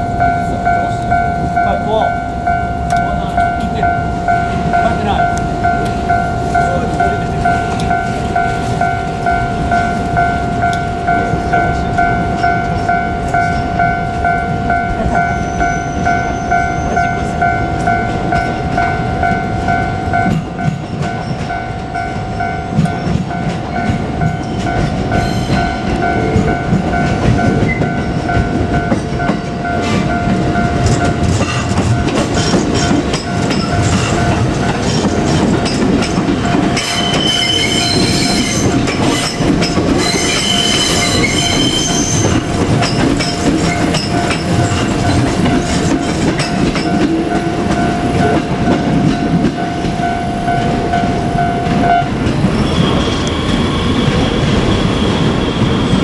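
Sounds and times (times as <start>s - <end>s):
level-crossing bell ringing: 0.0s - 56.0s
train wheel rumble and rail clatter: 0.0s - 56.0s
wheel squeal: 15.2s - 17.2s, 36.4s - 47.0s, 51.9s - 56.0s.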